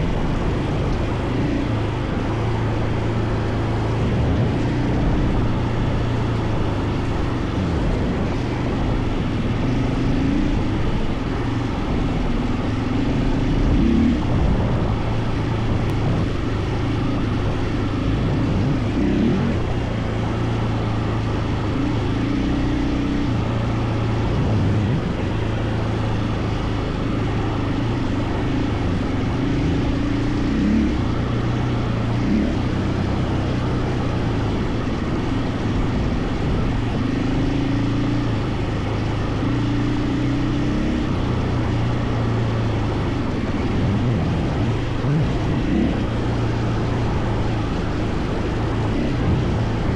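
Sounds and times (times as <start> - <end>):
motorcycle engine running: 0.0 - 49.9.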